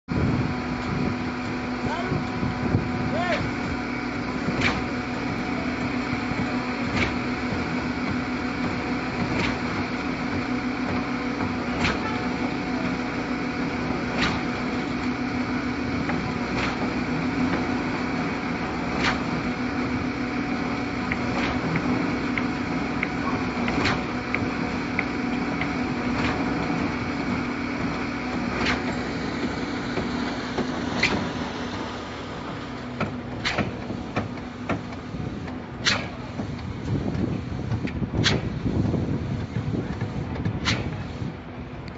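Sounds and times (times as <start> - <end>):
concrete pump running: 0.1 - 41.9
pump knocking: 1.8 - 13.1, 21.0 - 32.0, 32.9 - 41.1.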